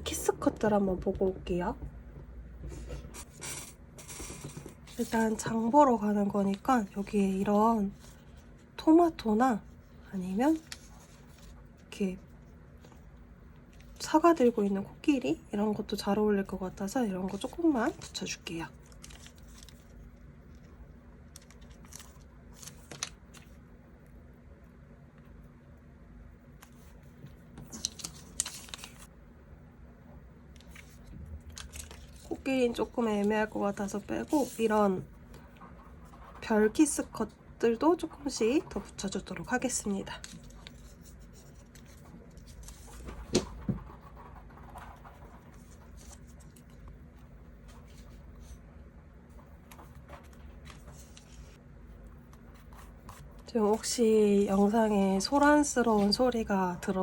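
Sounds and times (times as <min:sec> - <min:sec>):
paper stickers crinkling: 0:17.3 - 0:20.7, 0:21.3 - 0:23.6, 0:27.6 - 0:29.1, 0:30.6 - 0:34.8, 0:40.0 - 0:46.9, 0:49.4 - 0:51.6.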